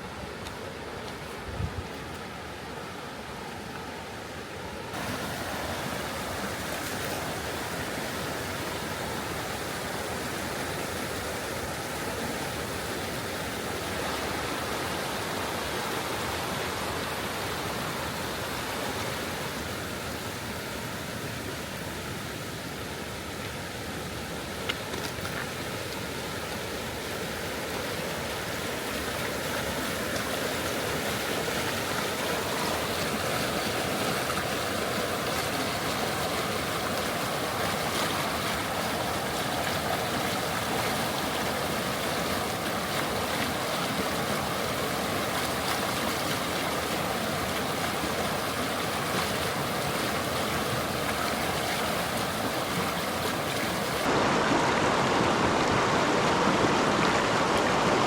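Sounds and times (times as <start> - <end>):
river water rushing: 0.0 - 58.0.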